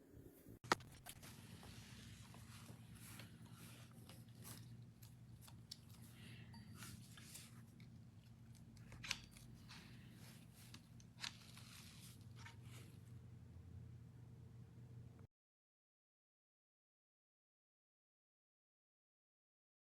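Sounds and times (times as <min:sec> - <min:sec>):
low steady hum: 0:00.0 - 0:15.3
items being handled clicks and rustles: 0:00.7 - 0:13.1.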